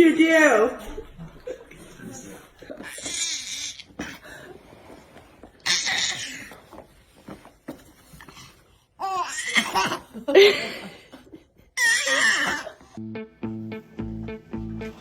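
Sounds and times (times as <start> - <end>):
baby laughing: 9.0 - 10.2, 11.8 - 13.0.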